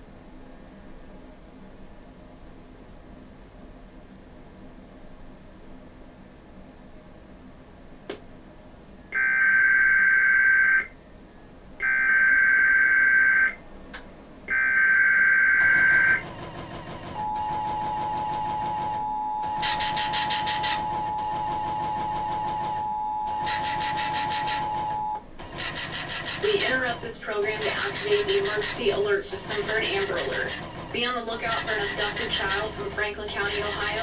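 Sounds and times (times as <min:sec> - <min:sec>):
two-tone alert signal: 0:15.6 - 0:16.3, 0:17.0 - 0:25.2, 0:31.4 - 0:34.0.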